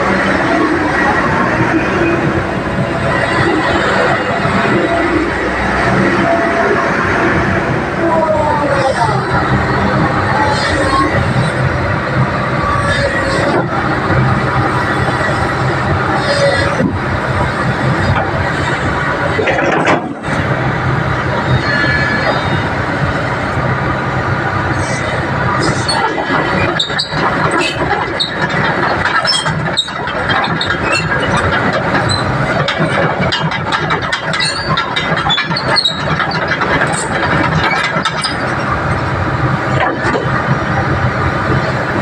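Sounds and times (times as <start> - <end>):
excavator diesel engine running: 0.0 - 42.0
metallic squeals and clicks: 10.4 - 11.6, 12.6 - 13.7, 16.1 - 16.9, 21.4 - 22.7, 24.8 - 38.7.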